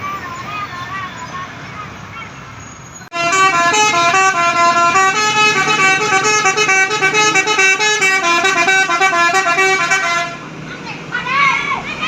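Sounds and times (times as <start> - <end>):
multi-tone bus horn melody: 3.1 - 10.5.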